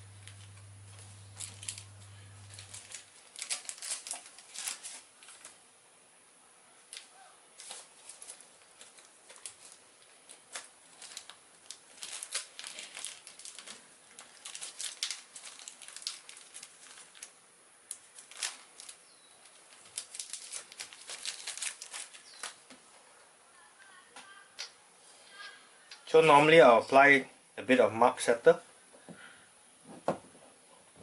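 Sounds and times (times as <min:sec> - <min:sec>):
paper crinkling: 0:00.0 - 0:05.6, 0:06.9 - 0:22.8.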